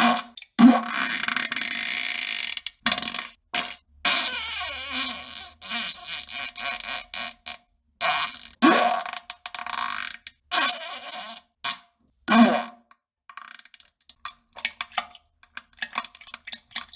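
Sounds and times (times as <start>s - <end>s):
fart sounds: 3.2s - 9.0s.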